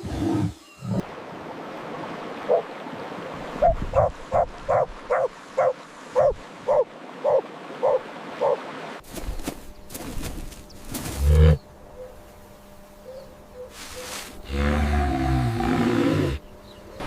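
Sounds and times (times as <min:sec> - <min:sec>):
animal yelping barks: 0:03.6 - 0:08.6.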